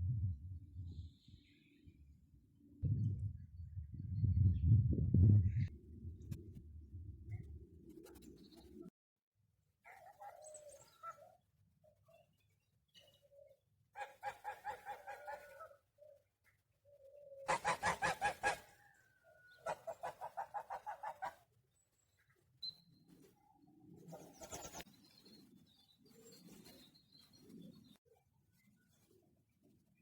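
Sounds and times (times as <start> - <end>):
soft low fowl calls: 14.0 - 15.8, 17.4 - 21.5
fowl rapid pulsed calls: 17.5 - 18.8, 19.5 - 21.4.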